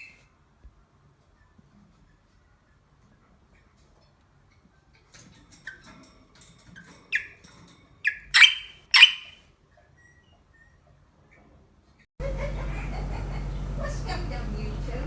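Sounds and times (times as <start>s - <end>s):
animal squeaky calls: 7.1s - 7.4s, 8.0s - 9.4s
harsh squawks: 8.0s - 9.4s.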